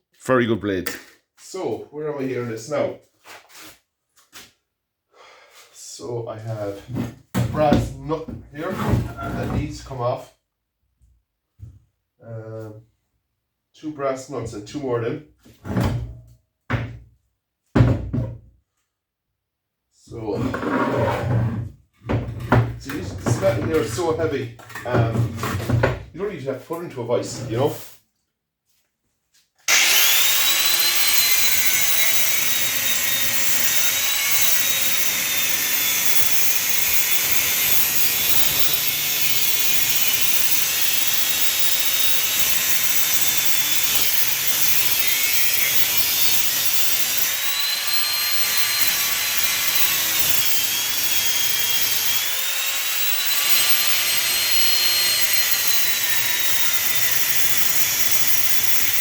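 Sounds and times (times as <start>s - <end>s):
angle grinder cutting metal: 29.7s - 59.0s.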